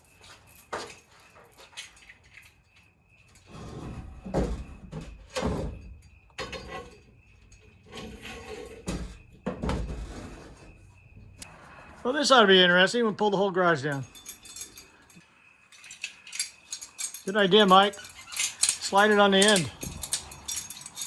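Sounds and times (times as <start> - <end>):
chain clanking against steel bar: 0.0 - 9.3, 13.9 - 21.0.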